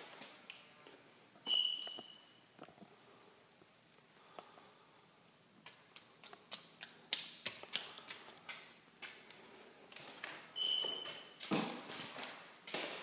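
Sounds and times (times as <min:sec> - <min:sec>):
footsteps on hard floor: 0:08.5 - 0:13.0.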